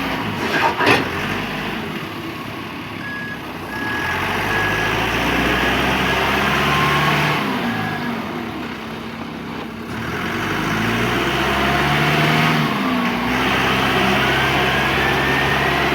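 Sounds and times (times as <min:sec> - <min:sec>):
diesel engine revving: 0:00.0 - 0:15.9
reversing alarm beeps: 0:03.0 - 0:07.1.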